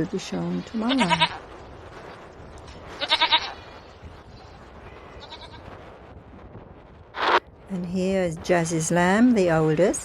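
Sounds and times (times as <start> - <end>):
sheep bleating: 0.6 - 1.4, 3.0 - 3.7, 5.1 - 5.6.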